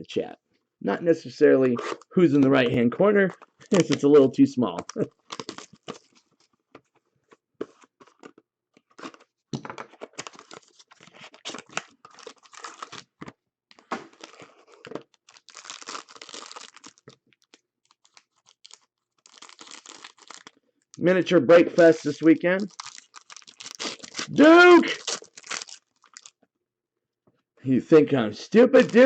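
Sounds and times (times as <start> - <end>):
wrappers tearing and crinkling: 3.6 - 4.3, 4.9 - 6.2, 10.1 - 13.2, 13.8 - 20.6, 21.8 - 26.4.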